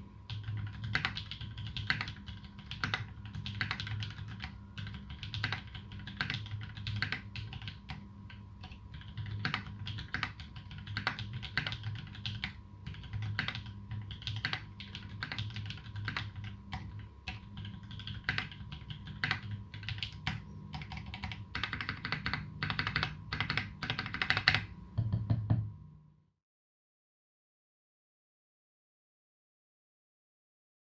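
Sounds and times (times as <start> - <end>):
typing on mechanical keyboard: 0.3 - 24.7.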